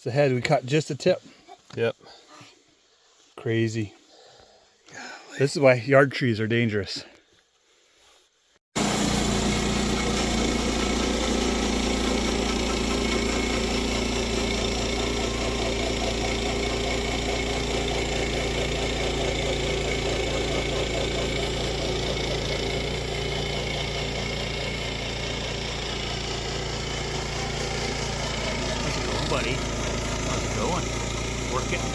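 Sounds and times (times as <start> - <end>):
sawmill engine running: 8.8 - 31.9.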